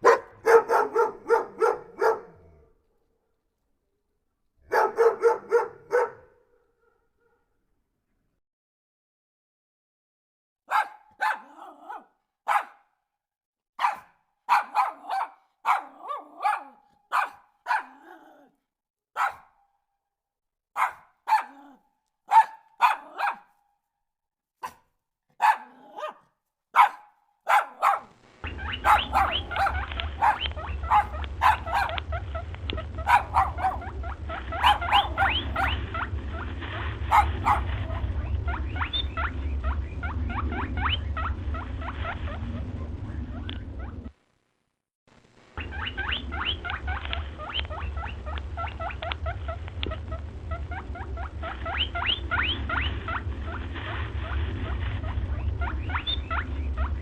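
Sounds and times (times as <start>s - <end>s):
dog barking: 0.0s - 2.7s, 4.6s - 7.6s, 10.7s - 13.0s, 13.8s - 18.5s, 19.1s - 19.7s, 20.7s - 23.6s, 24.6s - 32.1s, 32.8s - 35.8s, 37.1s - 38.1s
steady low hum: 28.0s - 57.0s.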